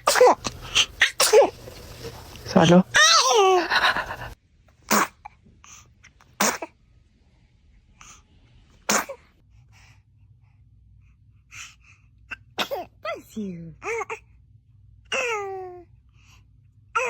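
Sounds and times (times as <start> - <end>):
baby sneezing: 0.0 - 5.3, 6.4 - 6.8, 8.9 - 9.2, 12.4 - 13.0.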